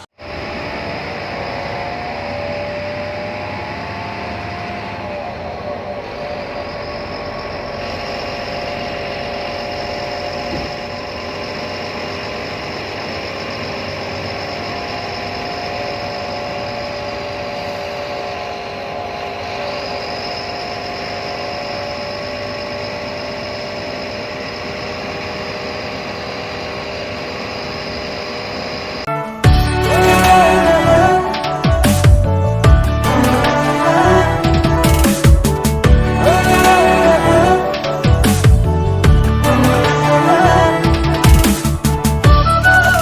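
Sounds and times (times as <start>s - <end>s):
bus engine drone: 0.0s - 43.0s
high steady whine: 0.0s - 43.0s.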